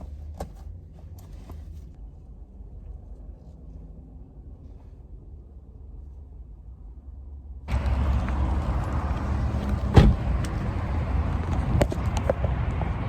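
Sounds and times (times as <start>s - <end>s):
traffic noise rumble and hiss: 0.0s - 13.0s
car cabin rumble: 7.7s - 13.0s
sharp thump: 9.8s - 10.6s.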